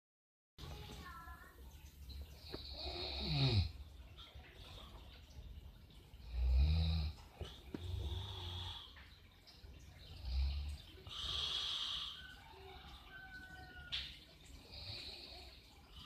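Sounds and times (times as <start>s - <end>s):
person snoring: 2.6s - 3.8s, 10.2s - 12.2s
hissing breath: 11.0s - 12.6s.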